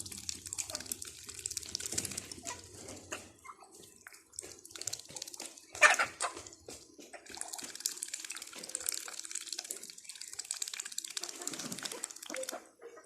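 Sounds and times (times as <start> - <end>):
ducks splashing in water: 0.0 - 12.7.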